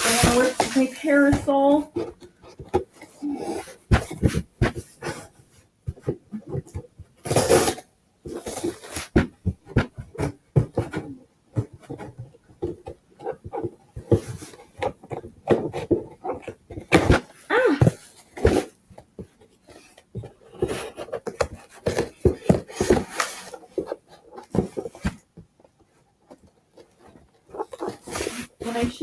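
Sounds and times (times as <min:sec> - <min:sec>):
cardboard tearing: 0:00.0 - 0:01.6, 0:07.2 - 0:09.2, 0:27.5 - 0:29.0
cardboard being cut and rustled: 0:00.0 - 0:05.3, 0:06.0 - 0:11.2, 0:19.8 - 0:25.2, 0:27.0 - 0:29.0.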